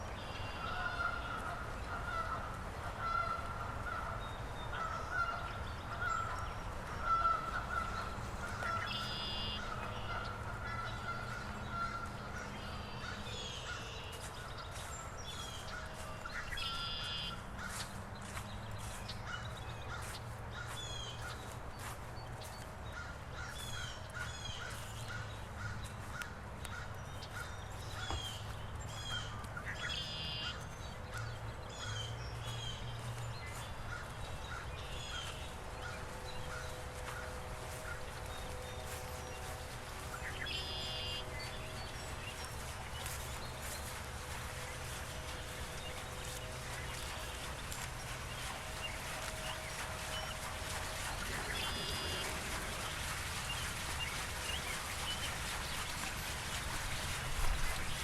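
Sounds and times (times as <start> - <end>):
birds calling: 0.0 - 58.0
honk-like bird calls: 7.0 - 12.1.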